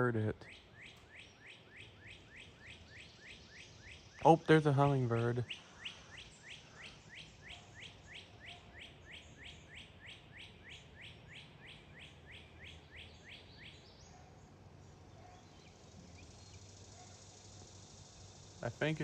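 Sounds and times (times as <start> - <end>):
songbird whistling: 0.4 - 4.5, 5.4 - 14.3.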